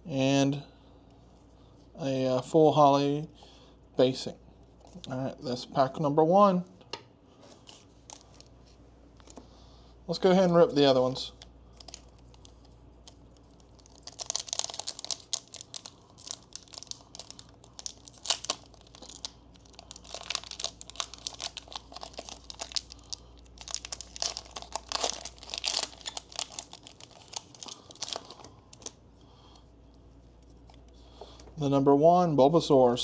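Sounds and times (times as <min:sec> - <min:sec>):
foil wrappers ripping and crinkling: 0:11.7 - 0:29.0.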